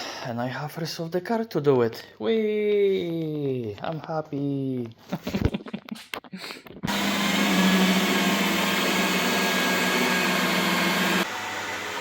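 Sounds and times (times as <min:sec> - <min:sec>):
electric polisher motor hum: 0:06.9 - 0:12.0.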